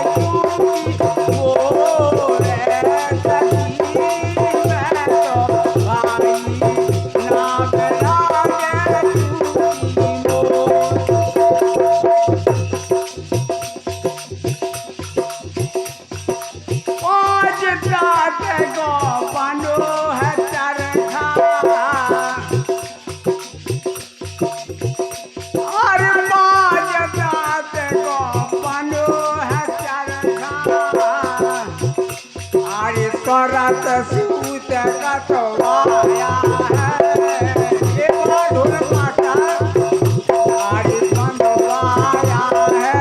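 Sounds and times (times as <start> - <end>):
drum beat: 0.0 - 43.0
shaken rattle: 12.8 - 43.0.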